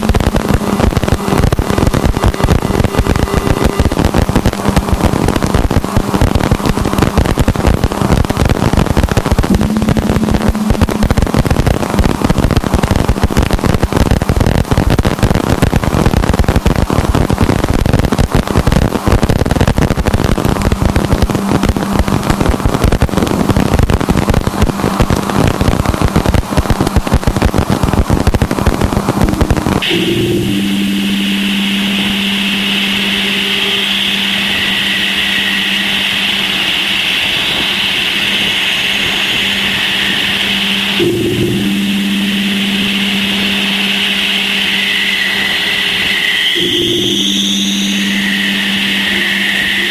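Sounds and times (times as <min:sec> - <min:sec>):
steady whirring: 0:00.0 - 0:13.6, 0:19.9 - 0:49.9
faint steady hum: 0:00.0 - 0:49.9
high hiss: 0:00.0 - 0:49.9
irregular crackling static: 0:00.0 - 0:49.9.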